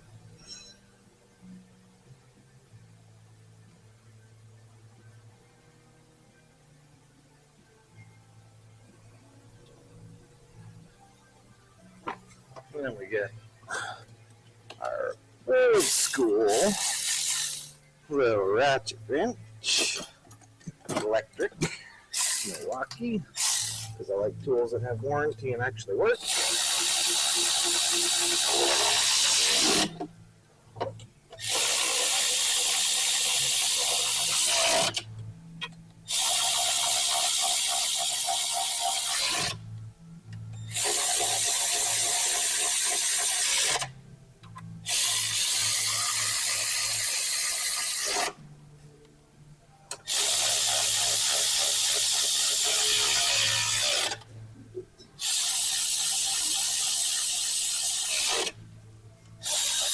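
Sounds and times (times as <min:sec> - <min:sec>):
electric ratchet spinning: 0:15.8 - 0:17.8, 0:22.1 - 0:24.0, 0:26.2 - 0:30.1, 0:31.4 - 0:35.1, 0:36.1 - 0:39.6, 0:40.6 - 0:44.0, 0:44.8 - 0:48.4, 0:49.9 - 0:54.3, 0:55.2 - 0:58.6, 0:59.4 - 0:59.9.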